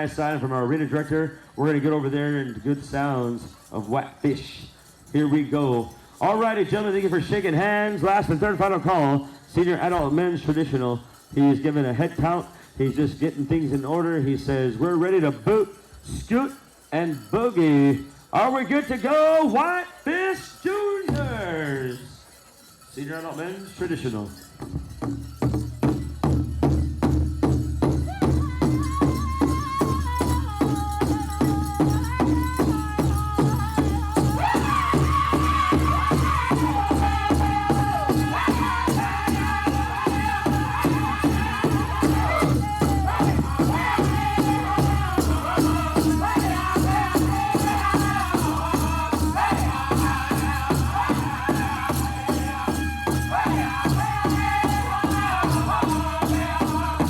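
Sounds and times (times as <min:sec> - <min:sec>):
big drum beating steadily: 0:24.7 - 0:57.0
group singing: 0:32.0 - 0:57.0.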